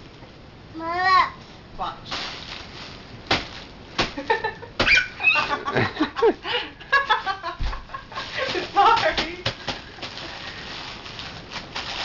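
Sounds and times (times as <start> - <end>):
bubble wrap popping: 2.1 - 5.4, 7.6 - 12.0
crinkling and clicks: 8.2 - 12.0.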